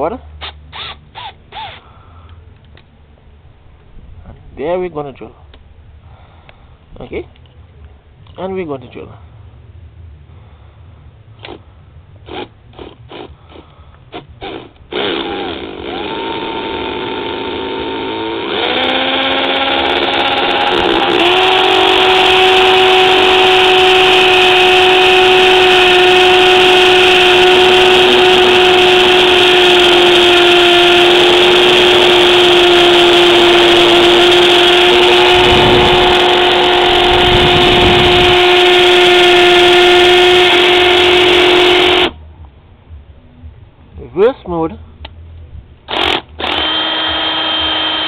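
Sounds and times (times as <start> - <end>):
hammer drill boring into concrete: 14.1 - 42.1, 45.9 - 48.0.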